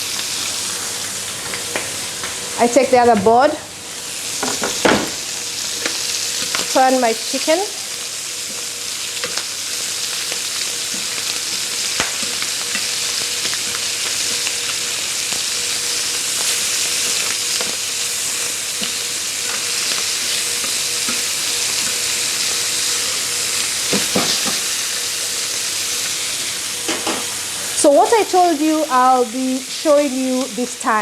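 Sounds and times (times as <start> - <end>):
chicken sizzling in hot oil: 0.0 - 31.0.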